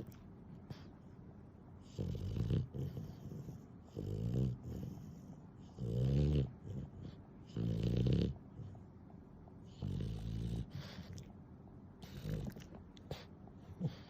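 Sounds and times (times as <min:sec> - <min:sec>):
dog snoring: 0:01.8 - 0:08.8, 0:09.6 - 0:11.3, 0:12.0 - 0:14.0.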